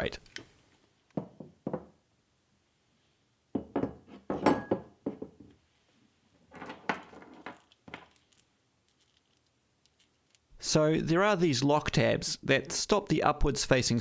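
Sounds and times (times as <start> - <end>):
small metal parts clinking: 7.5 - 10.5.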